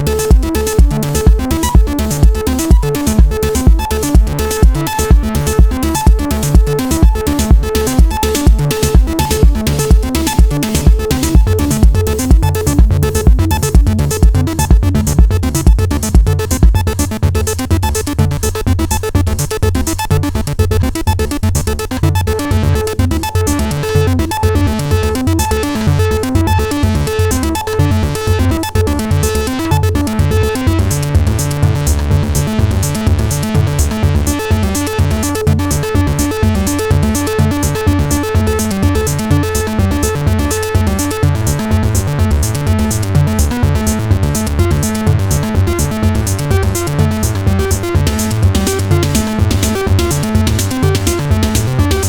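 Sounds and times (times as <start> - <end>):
drum machine beat: 0.0 - 18.1, 30.4 - 52.0
synthesizer lines: 0.0 - 52.0.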